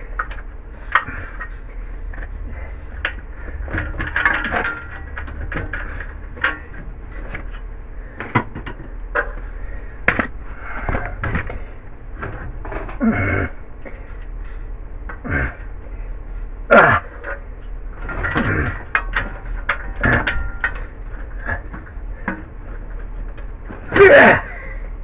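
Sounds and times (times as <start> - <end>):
metal tools clinking and rattling: 0.1 - 7.7, 17.1 - 23.5.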